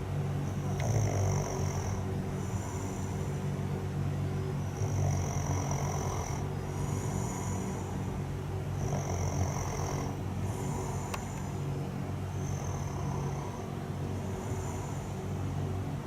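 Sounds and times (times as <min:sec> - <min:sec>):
person snoring loudly: 0:00.5 - 0:03.4, 0:04.6 - 0:08.1, 0:08.8 - 0:11.5, 0:12.4 - 0:15.2.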